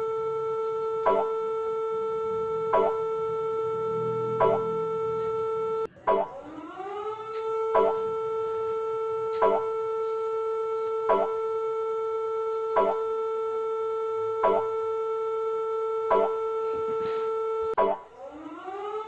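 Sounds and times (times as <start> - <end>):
steady siren tone: 0.0 - 19.0
short blips: 17.7 - 18.1.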